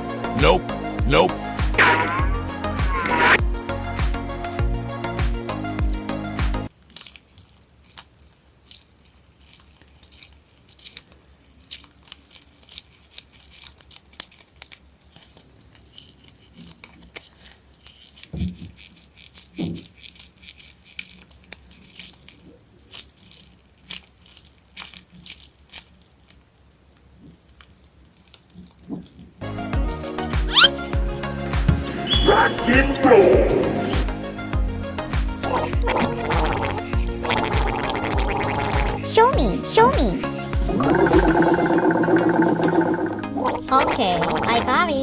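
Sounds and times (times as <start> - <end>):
paper crinkling and tearing: 6.8 - 26.4.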